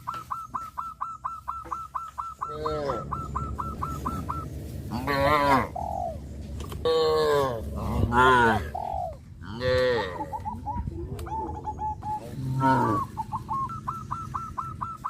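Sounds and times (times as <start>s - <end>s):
bird calling short notes: 0.0s - 6.2s
cow mooing: 4.9s - 5.7s, 6.8s - 8.7s, 9.4s - 10.3s, 12.4s - 13.1s.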